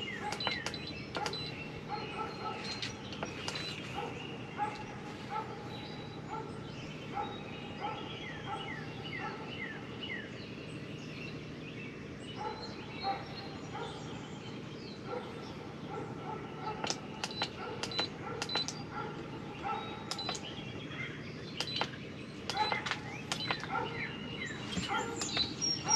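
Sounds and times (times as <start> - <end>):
sharp clicks: 0.0 - 1.6, 16.7 - 19.3, 20.0 - 20.6, 21.6 - 24.0, 24.7 - 25.9
birds chirping and singing: 0.0 - 25.9
faint low hum: 0.0 - 25.9.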